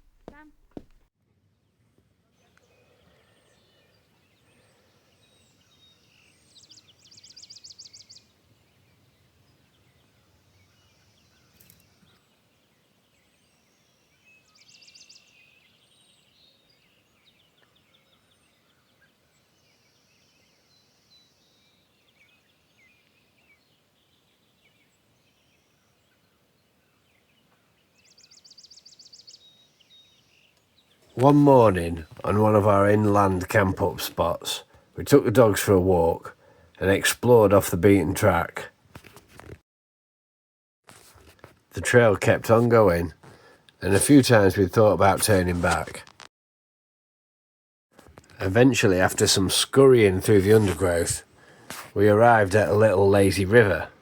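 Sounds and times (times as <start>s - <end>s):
faint bird chirps: 2.2s - 32.3s.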